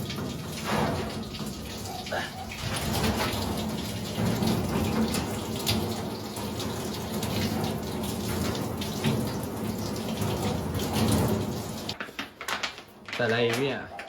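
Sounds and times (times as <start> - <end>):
running water splashing: 0.0 - 12.0.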